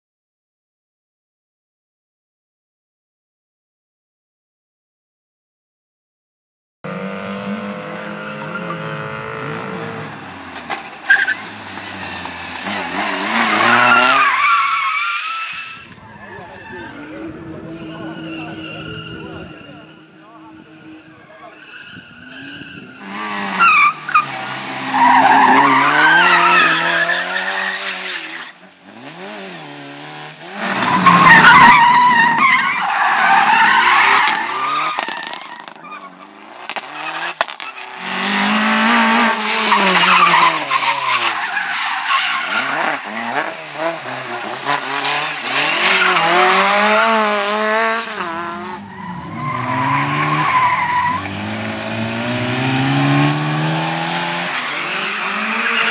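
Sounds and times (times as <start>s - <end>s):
car engine revving: 6.9s - 14.6s, 22.3s - 55.9s.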